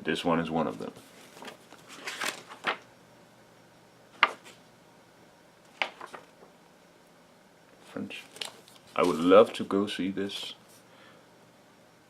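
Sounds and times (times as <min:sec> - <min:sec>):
packaging rustling: 0:01.3 - 0:02.8, 0:05.7 - 0:06.5, 0:08.1 - 0:09.6.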